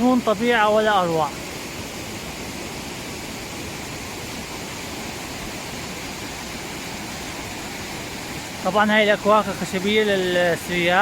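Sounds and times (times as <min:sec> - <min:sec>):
waterfall and river rushing: 0:00.0 - 0:11.0.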